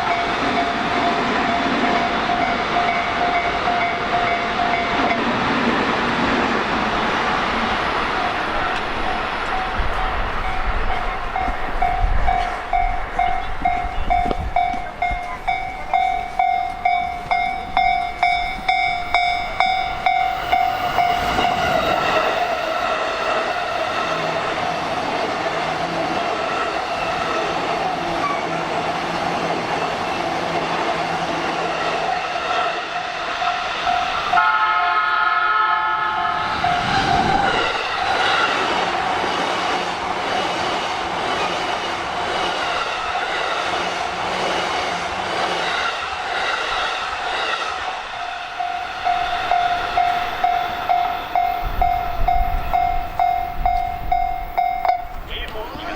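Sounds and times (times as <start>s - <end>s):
level-crossing warning bell ringing: 0.0s - 5.4s, 7.8s - 24.6s, 33.0s - 37.8s, 48.0s - 55.9s
train wheels clattering on rails: 0.0s - 34.4s, 36.5s - 55.9s
train horn: 32.6s - 38.1s.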